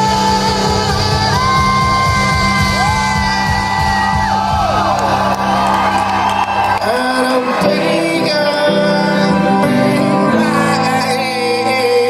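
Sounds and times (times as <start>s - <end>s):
live rock band playing: 0.0s - 12.0s
crowd whooping and shouting: 1.2s - 9.5s.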